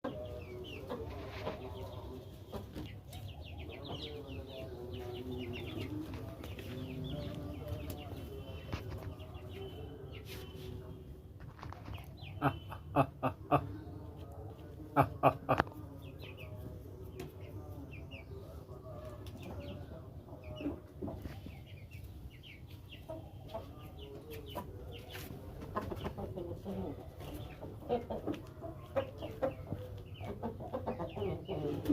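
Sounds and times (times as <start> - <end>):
adult chickens clucking: 0.0 - 31.9
chicks peeping: 0.0 - 31.9.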